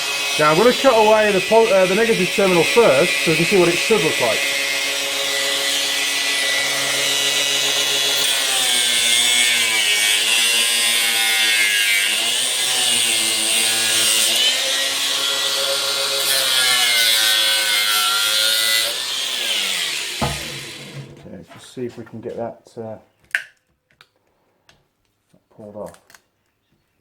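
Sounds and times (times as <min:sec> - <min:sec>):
angle grinder cutting: 0:00.0 - 0:21.2.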